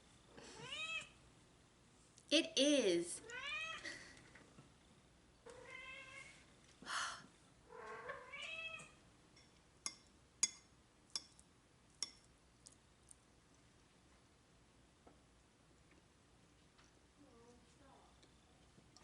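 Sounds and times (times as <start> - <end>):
cat meowing: 0.6 - 1.1, 3.2 - 3.8, 5.5 - 6.4, 7.7 - 9.0.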